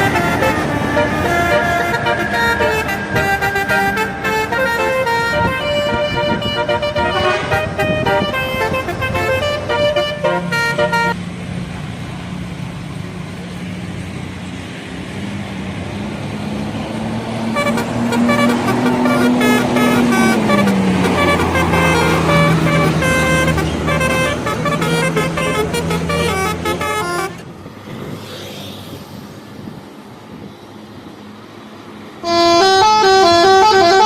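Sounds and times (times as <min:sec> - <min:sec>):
multi-note bus horn melody: 0:00.0 - 0:11.2, 0:17.5 - 0:27.5, 0:32.2 - 0:34.0.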